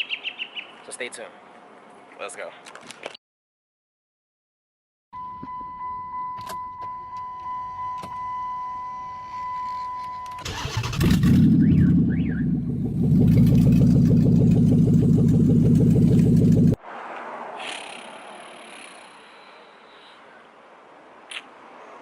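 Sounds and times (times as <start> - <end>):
car warning chime: 5.2 - 10.6
car engine cranking and running: 10.4 - 16.8.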